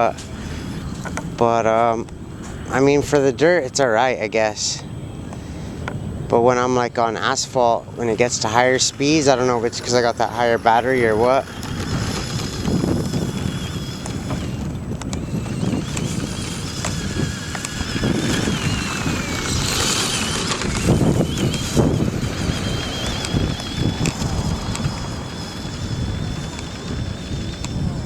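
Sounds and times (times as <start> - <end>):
rc truck motor whine: 0.0 - 3.0, 4.5 - 28.0
tyres rumbling on rough ground: 5.8 - 28.0.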